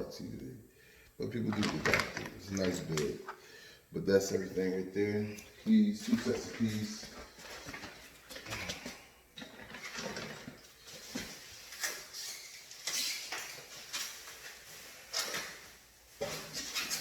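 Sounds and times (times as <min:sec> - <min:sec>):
rustling of items: 0:01.2 - 0:03.5, 0:04.2 - 0:17.0
items clicking and clattering: 0:01.5 - 0:03.4, 0:06.0 - 0:17.0.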